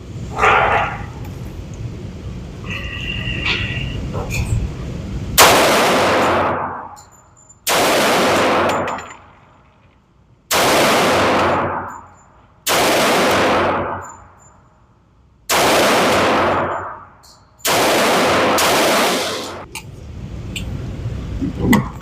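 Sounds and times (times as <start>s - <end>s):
gunshots with echo: 5.4s - 7.0s, 7.7s - 9.5s, 10.5s - 12.0s, 12.7s - 14.3s, 15.5s - 19.7s.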